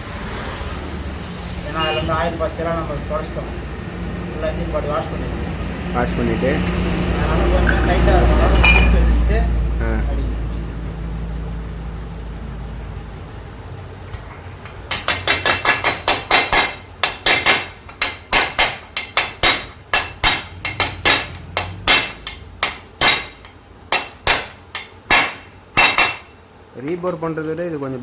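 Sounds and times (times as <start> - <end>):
hammer striking metal: 8.5 - 9.1, 14.9 - 26.4.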